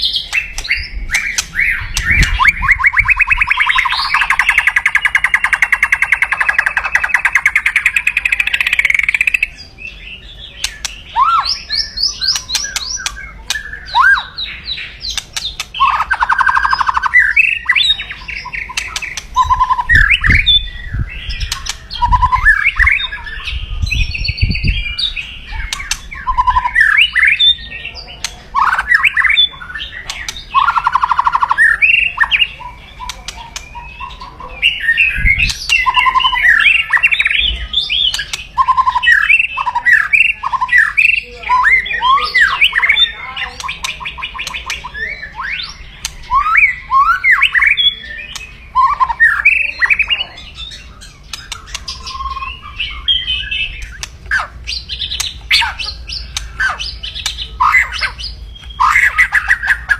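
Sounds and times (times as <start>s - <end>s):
bird harsh rattling call: 0.0s - 9.4s.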